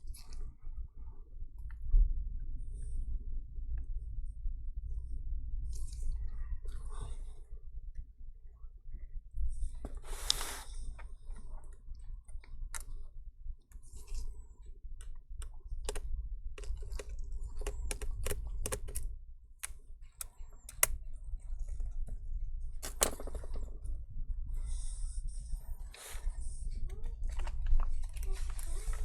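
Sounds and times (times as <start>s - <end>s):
clicks and taps on plastic parts: 16.6s - 19.0s, 20.7s - 20.9s.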